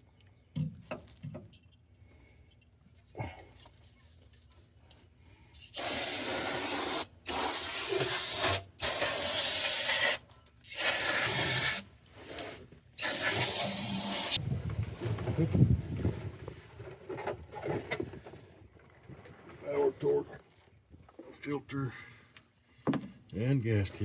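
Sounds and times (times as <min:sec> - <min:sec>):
aerosol spray hissing: 0:05.8 - 0:10.2, 0:10.8 - 0:11.8, 0:13.0 - 0:14.4.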